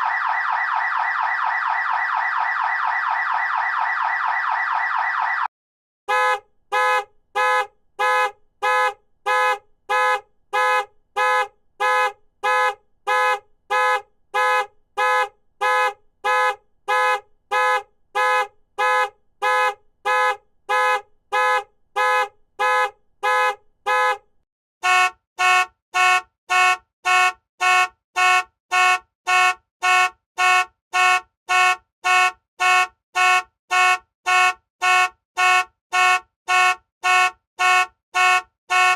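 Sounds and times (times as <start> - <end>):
continuous alarm tone: 0.0 - 5.5
car alarm horn beeps: 6.1 - 38.9.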